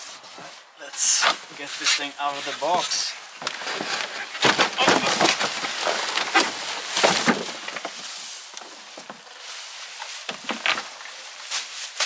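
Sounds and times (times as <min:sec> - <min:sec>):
cardboard box rustling and scraping: 0:02.0 - 0:11.0.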